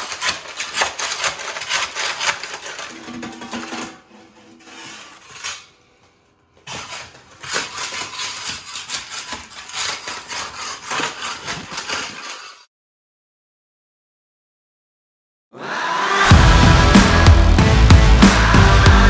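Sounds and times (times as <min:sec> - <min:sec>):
hand tools clinking and scraping: 0:00.0 - 0:12.7.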